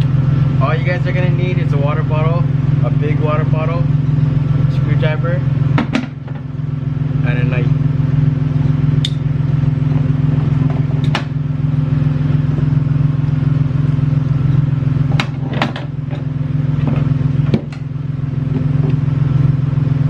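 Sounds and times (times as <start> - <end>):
truck engine idling: 0.0 - 20.0
engine ticking and light knocking: 9.8 - 19.3.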